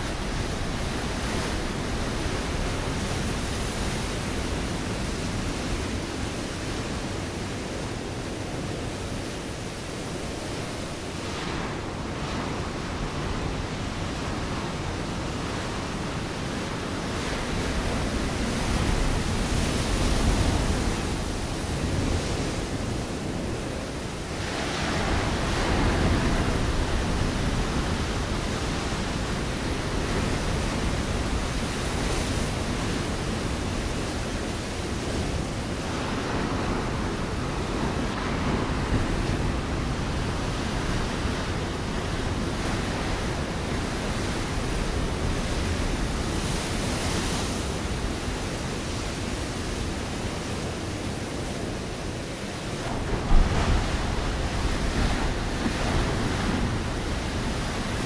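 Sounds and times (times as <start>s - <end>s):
ocean waves breaking on rocks: 0.0s - 58.0s.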